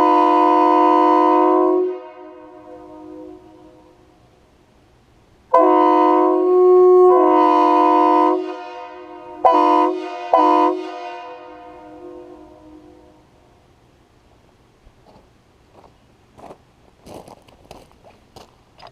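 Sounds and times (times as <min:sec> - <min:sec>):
horn echo: 0:00.0 - 0:04.1, 0:05.5 - 0:13.3
train horn blasts: 0:00.0 - 0:04.2, 0:05.5 - 0:13.3.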